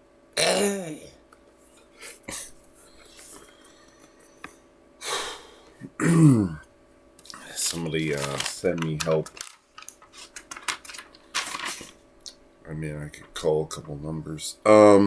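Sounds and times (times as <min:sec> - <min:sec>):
man making vocal sound effects: 0:00.4 - 0:01.2.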